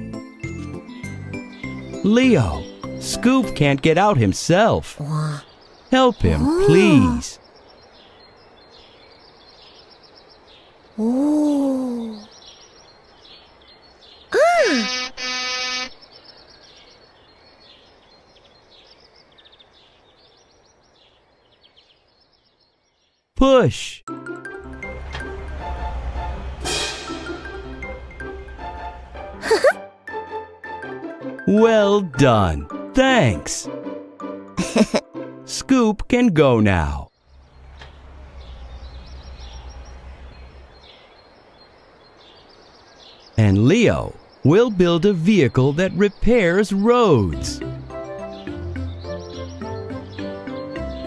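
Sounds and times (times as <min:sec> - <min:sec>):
birdsong chirps: 0:00.0 - 0:24.1, 0:35.7 - 0:51.0
cartoon voice exclamation: 0:04.9 - 0:05.5, 0:06.2 - 0:07.4, 0:11.0 - 0:12.3, 0:14.4 - 0:15.2, 0:29.4 - 0:29.8
horn honk: 0:14.6 - 0:16.0.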